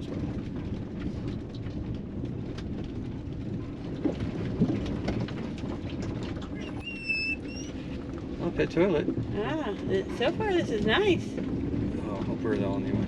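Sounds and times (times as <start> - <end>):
tyres and engine rumble: 0.0 - 13.0
high squeak: 6.6 - 7.8.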